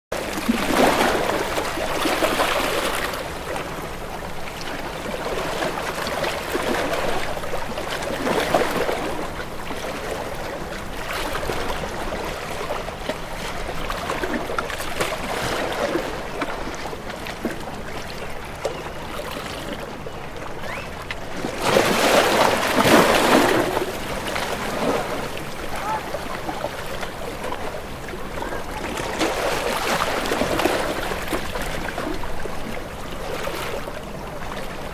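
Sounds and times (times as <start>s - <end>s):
water washing and splashing: 20.7s - 33.9s.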